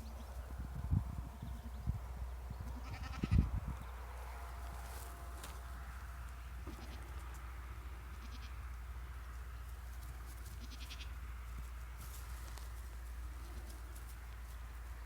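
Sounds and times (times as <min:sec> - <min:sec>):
steady low rumble: 0:00.0 - 0:10.2
baby goats bleating: 0:02.7 - 0:03.5, 0:06.7 - 0:07.2, 0:08.1 - 0:08.6, 0:10.5 - 0:11.2.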